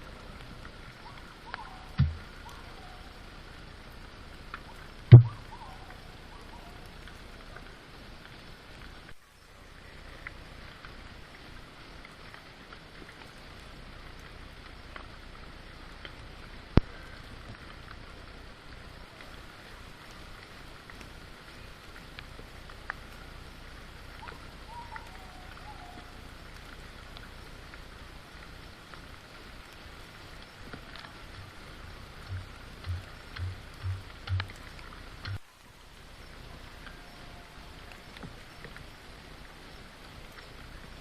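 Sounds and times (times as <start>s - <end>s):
steady rain falling: 0.0s - 41.0s
dull low thumps: 2.0s - 2.4s, 5.1s - 5.5s, 32.2s - 34.6s, 35.2s - 35.4s
single drops ticking: 2.0s - 2.4s, 5.1s - 5.5s, 32.2s - 35.4s
sharp click: 5.1s - 5.4s, 35.2s - 35.4s.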